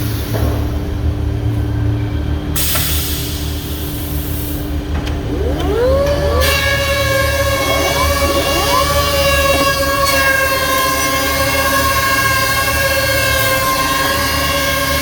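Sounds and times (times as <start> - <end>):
high-pitched machine whine: 5.0 - 10.6
planer machine humming: 5.1 - 10.2.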